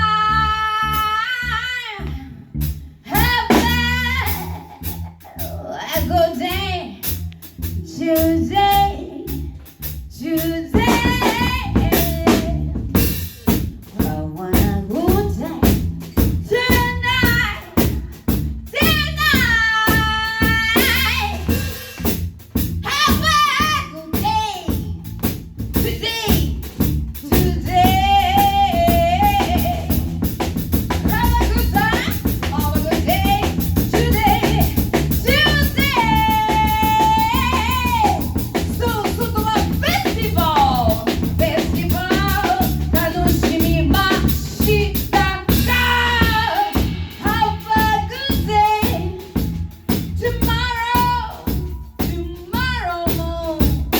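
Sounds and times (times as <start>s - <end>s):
low bass line: 0.0s - 5.6s
drum kit beat: 2.2s - 53.9s.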